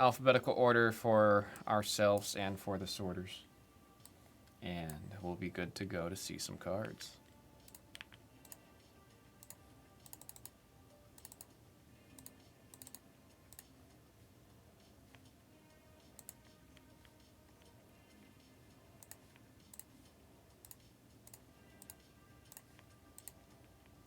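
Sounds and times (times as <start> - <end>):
keyboard typing: 7.6 - 8.6, 9.4 - 10.6, 11.2 - 11.6, 12.2 - 13.7, 16.1 - 17.7, 19.0 - 23.6
mouse clicks: 7.6 - 8.6, 9.4 - 10.5, 11.2 - 11.5, 12.2 - 13.7.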